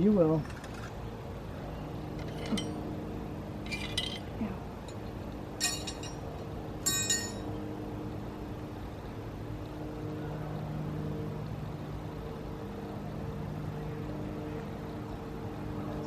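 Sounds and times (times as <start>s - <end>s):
steady low hum: 0.0s - 16.0s
metal bird feeder clinks: 2.1s - 2.8s, 3.6s - 5.0s, 5.6s - 7.5s.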